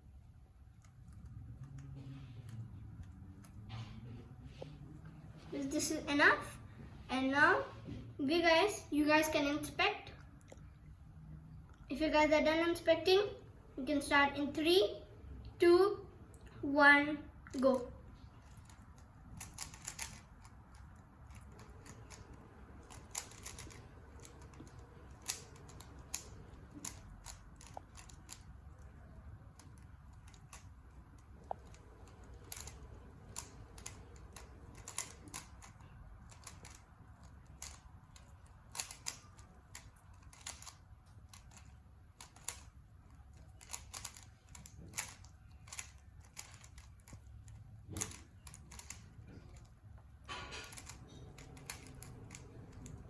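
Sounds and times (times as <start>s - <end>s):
puzzle cube clicking: 18.4s - 49.7s, 50.6s - 53.0s.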